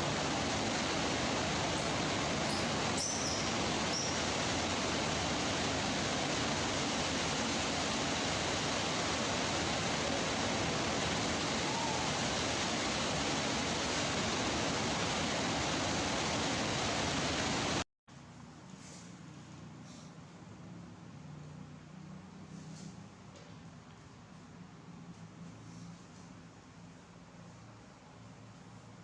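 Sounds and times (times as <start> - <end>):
steady hiss: 0.0 - 17.8.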